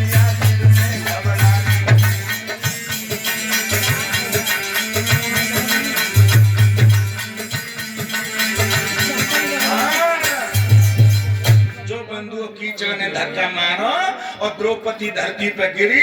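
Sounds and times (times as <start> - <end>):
drums and rattling percussion: 0.0 - 11.9.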